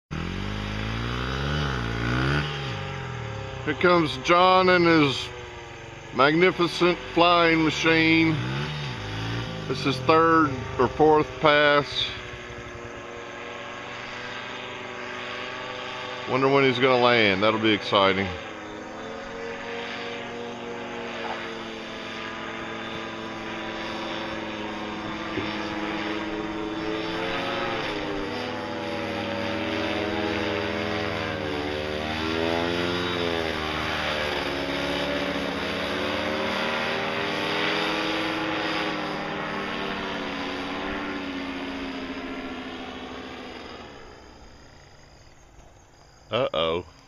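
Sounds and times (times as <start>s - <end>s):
paramotor engine and propeller: 0.1s - 47.0s.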